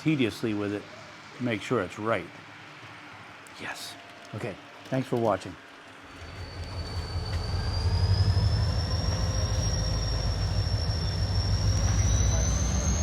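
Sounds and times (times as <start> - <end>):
high whine rising in pitch: 6.0 - 13.0
diesel engine rumble: 6.1 - 13.0.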